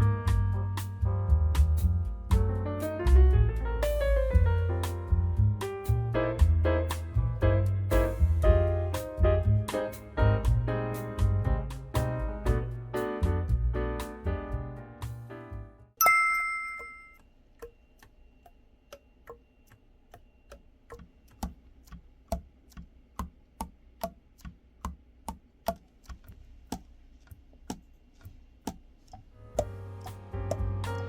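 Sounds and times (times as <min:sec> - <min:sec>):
bright ringing ding: 0:16.0 - 0:17.2.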